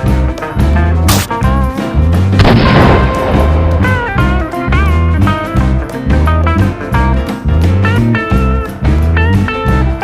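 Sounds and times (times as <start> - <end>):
guitar-led instrumental music: 0.0 - 10.0
pulsing bass beat: 2.7 - 7.2.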